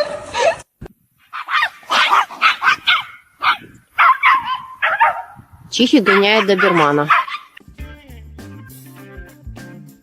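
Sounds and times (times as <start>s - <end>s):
dog yipping and whining: 1.4s - 5.4s, 6.1s - 7.6s.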